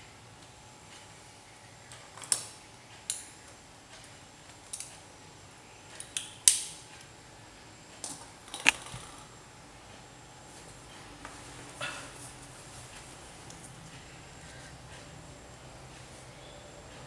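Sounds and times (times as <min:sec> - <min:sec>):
sharp clicks and snaps: 0:08.0 - 0:09.1.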